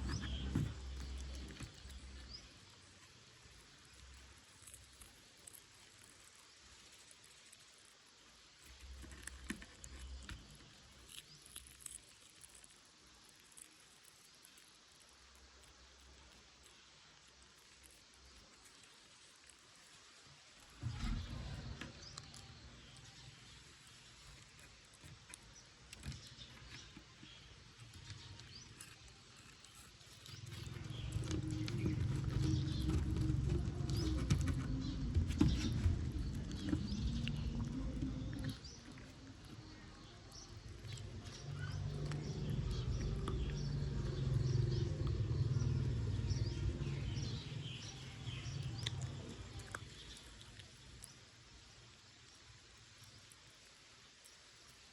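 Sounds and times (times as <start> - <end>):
puppies chewing: 0.0 - 51.8
small birds chirping: 0.0 - 54.9
low rumble: 41.2 - 49.6.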